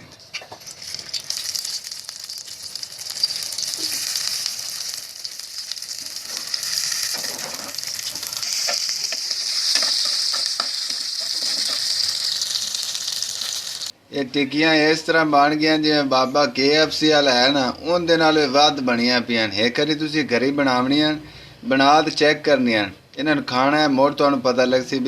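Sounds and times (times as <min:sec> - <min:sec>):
food frying in hot oil: 0:00.5 - 0:14.0.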